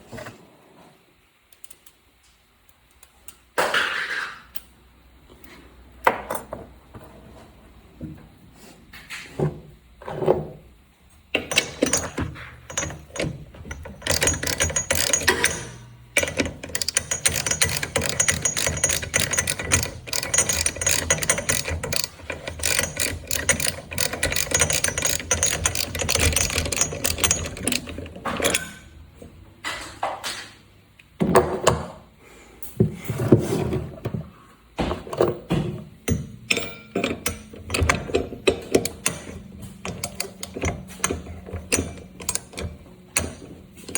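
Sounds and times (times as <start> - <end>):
ratchet wrench clicking: 11.5 - 28.8.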